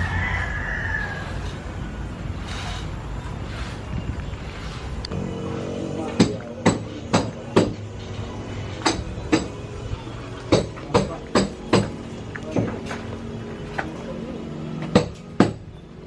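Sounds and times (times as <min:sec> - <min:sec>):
hammer blows: 0:05.1 - 0:09.8, 0:10.4 - 0:13.0, 0:14.8 - 0:15.8.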